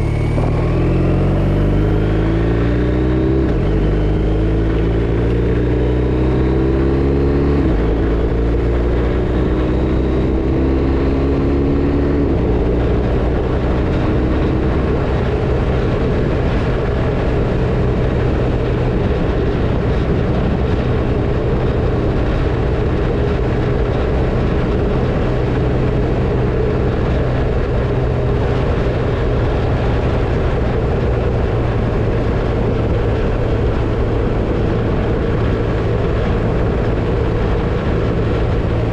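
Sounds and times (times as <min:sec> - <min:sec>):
wind rushing: 0:00.0 - 0:26.6
motorcycle engine accelerating: 0:00.0 - 0:38.9.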